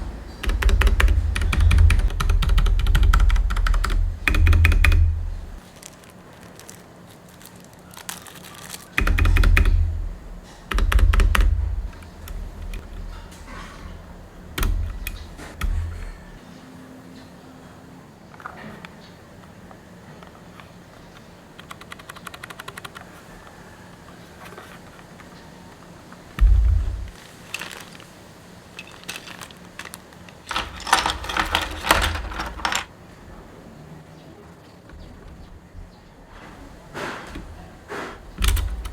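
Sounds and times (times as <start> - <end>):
mechanical keyboard clacks: 0.4 - 5.6, 8.2 - 16.4, 21.6 - 23.1, 26.4 - 27.2, 28.8 - 32.9, 38.2 - 38.9
heavy low thump: 9.0 - 16.4, 26.4 - 27.2.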